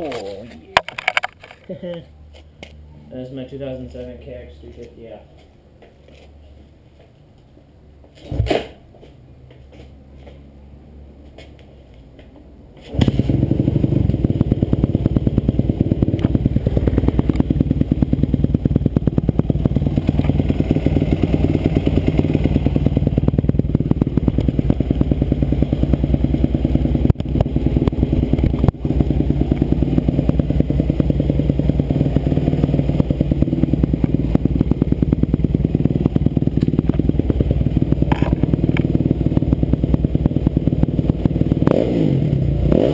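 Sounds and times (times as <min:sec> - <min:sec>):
motocross engine running: 0:12.9 - 0:42.9.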